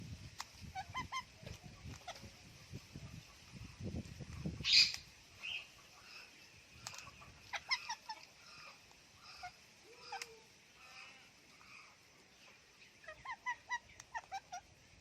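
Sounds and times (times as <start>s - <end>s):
parrot chattering: 7.5s - 10.3s
parrot squawk: 7.5s - 11.1s.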